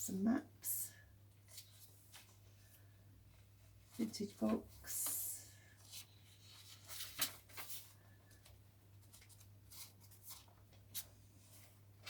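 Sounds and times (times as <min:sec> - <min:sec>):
paper pages rustling: 0:01.4 - 0:02.9, 0:03.9 - 0:12.0.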